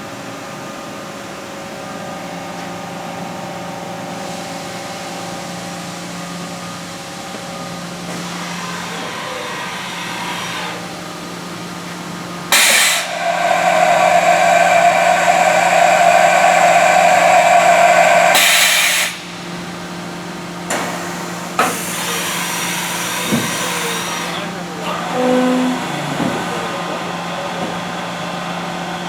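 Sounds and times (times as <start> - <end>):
machining center humming: 11.4 - 20.6
loud machine sound: 12.1 - 19.9.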